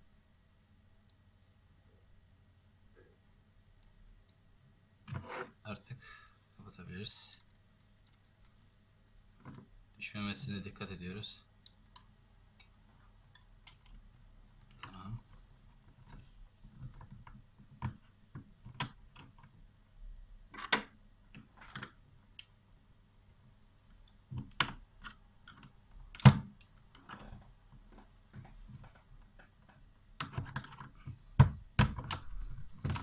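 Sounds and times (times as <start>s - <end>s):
plastic clicks and knocks: 24.3s - 33.0s.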